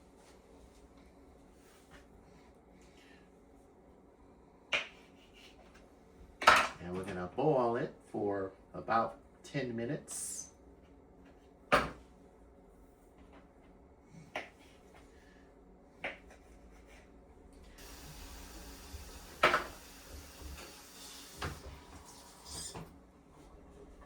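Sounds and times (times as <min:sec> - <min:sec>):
steady hiss: 0:17.8 - 0:22.9.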